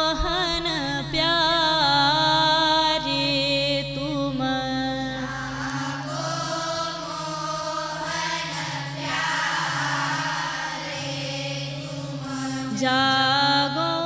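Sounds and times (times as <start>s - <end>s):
group singing devotional song: 5.1s - 14.0s
steady drone: 5.2s - 13.4s.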